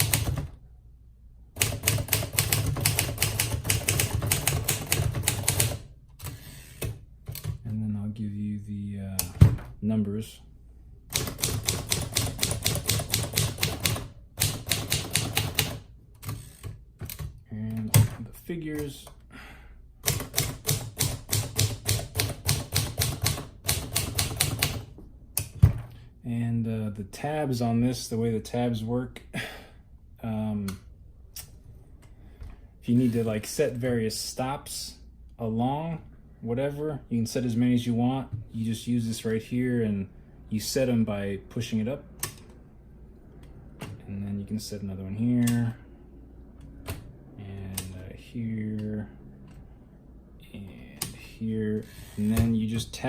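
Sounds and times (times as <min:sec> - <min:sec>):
manual typewriter typing: 0:00.0 - 0:00.6, 0:01.6 - 0:07.6, 0:11.1 - 0:18.2, 0:20.0 - 0:24.9.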